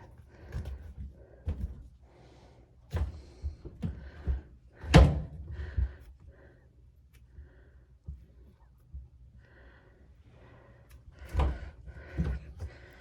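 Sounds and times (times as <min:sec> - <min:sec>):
washing machine door knocks and thuds: 0:04.8 - 0:05.4.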